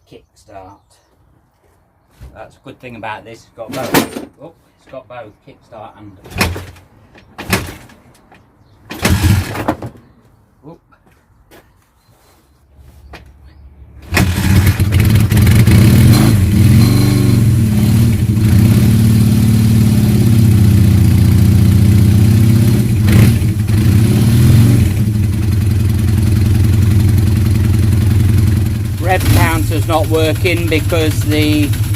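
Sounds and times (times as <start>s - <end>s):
motorcycle engine revving: 8.9s - 9.7s, 14.0s - 31.9s.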